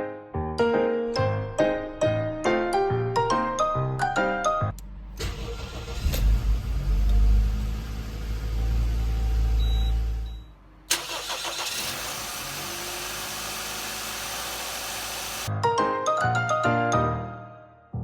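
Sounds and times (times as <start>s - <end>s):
car engine starting and running: 4.8s - 15.5s.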